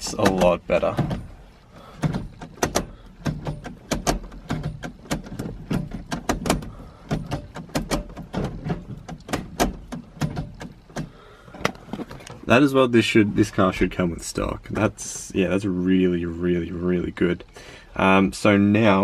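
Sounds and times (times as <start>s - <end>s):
gear lever clicks and clunks: 0.0s - 12.5s.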